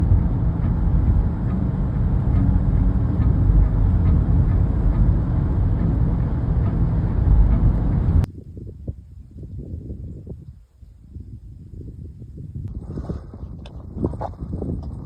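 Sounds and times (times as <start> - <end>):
machine low rumble: 0.0 - 8.4.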